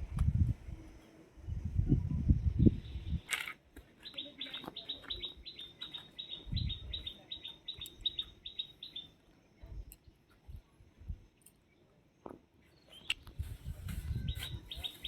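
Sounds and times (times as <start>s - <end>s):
small bird chirping: 2.5s - 10.6s, 12.6s - 15.0s.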